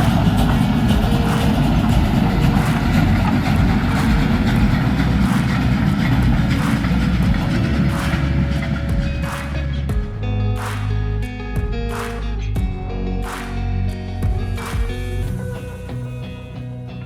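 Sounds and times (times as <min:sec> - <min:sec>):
steam train rumbling past: 0:00.0 - 0:09.3.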